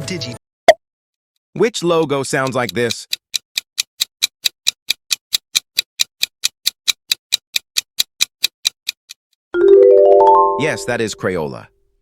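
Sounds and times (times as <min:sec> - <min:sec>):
clock-like ticking: 0:01.8 - 0:09.2.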